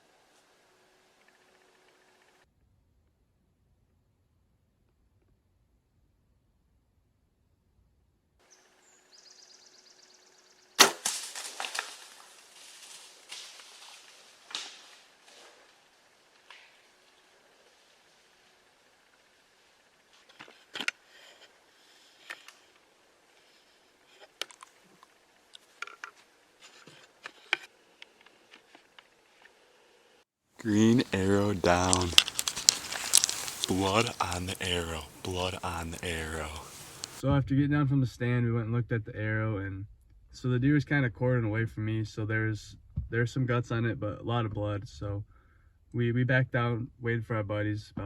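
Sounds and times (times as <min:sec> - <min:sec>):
deer running through dry leaves: 0:10.8 - 0:18.6, 0:30.6 - 0:37.2
handling clicks and rustling: 0:30.6 - 0:37.2.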